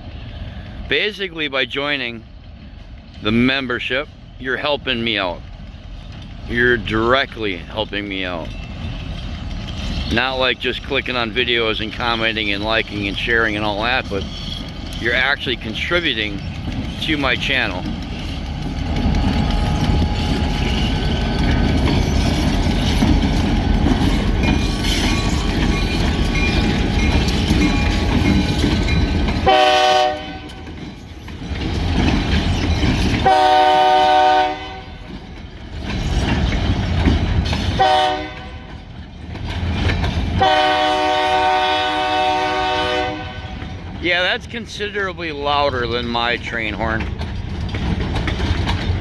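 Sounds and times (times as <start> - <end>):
freight train rumbling: 0.0 - 49.0
locomotive air horn blasts: 29.4 - 30.5, 33.2 - 35.0, 37.8 - 38.6, 40.4 - 43.6.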